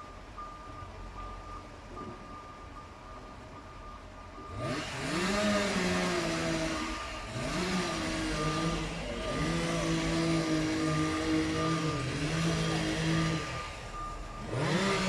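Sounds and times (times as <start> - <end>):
reversing alarm beep: 0.0 - 15.0
engine revving: 4.5 - 15.0.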